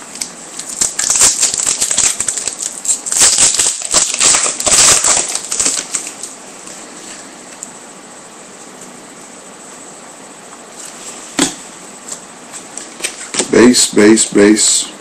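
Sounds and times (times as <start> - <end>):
foil wrapper tearing and crinkling: 0.0 - 6.4.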